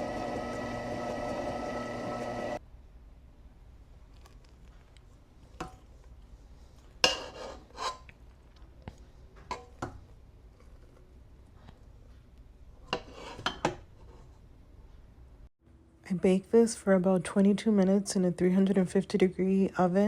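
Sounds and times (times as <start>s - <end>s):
utensil scraping mixing bowl: 0.0s - 2.6s.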